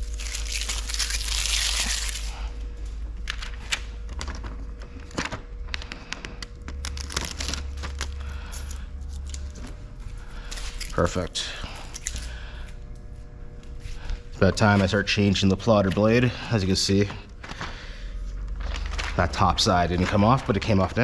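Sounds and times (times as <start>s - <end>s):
plastic film crinkling: 0.0s - 2.5s, 6.7s - 9.6s, 16.9s - 21.0s.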